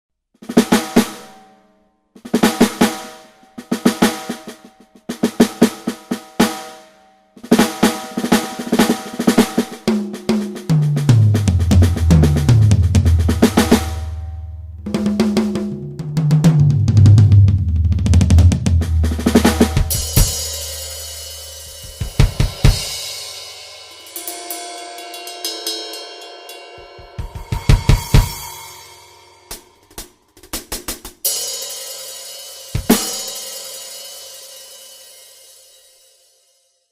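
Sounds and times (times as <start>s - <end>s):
drum fills: 2.2s - 34.4s
cymbal crash ringing: 19.1s - 29.9s.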